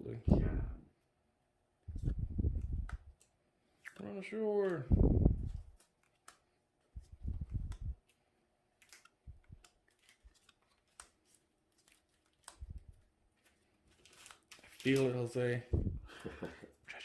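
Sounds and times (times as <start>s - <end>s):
cards and wrappers rustling: 2.0s - 16.7s
low thumps: 15.7s - 16.1s.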